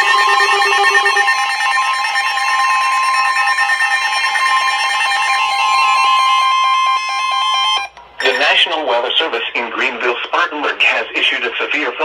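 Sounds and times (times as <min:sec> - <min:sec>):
two-tone alarm signal: 0:00.0 - 0:08.7.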